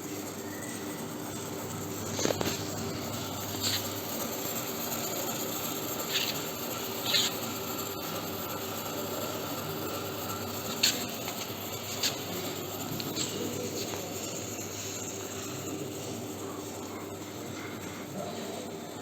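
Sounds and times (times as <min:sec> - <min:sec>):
strapping machine humming: 0:00.0 - 0:19.0
short hissing bursts: 0:02.8 - 0:15.6.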